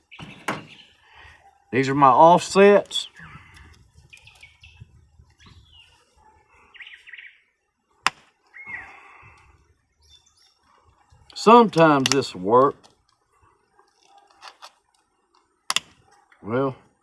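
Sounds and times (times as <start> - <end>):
handling noise: 0.0 - 0.9
faint bird chirps: 3.1 - 7.5, 8.5 - 9.4.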